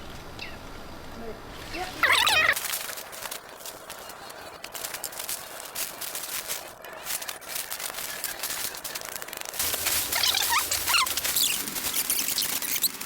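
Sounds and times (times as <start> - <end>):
rustling and crackling: 1.1 - 13.0
small birds chirping: 1.2 - 2.6, 9.6 - 13.0.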